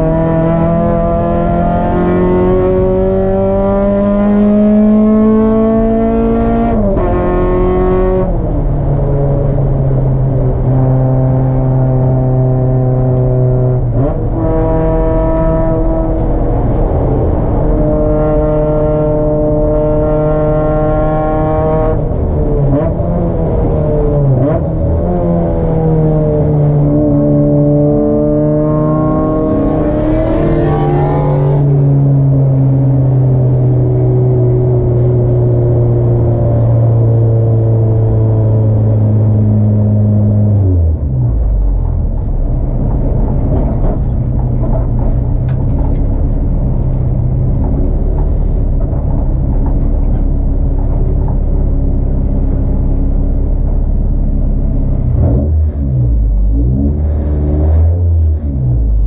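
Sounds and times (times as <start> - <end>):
race car engine: 0.0 - 59.0.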